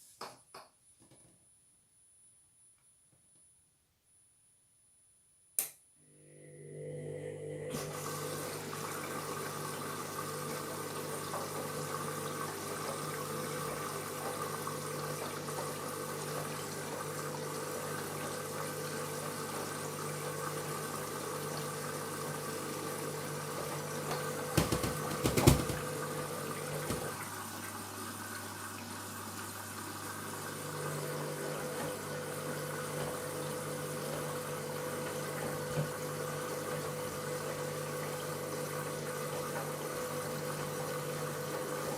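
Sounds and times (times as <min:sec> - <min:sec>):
washing machine motor hum: 0:06.0 - 0:41.9
water rushing into washing machine: 0:06.6 - 0:41.9
knocks and clatter: 0:24.6 - 0:25.9.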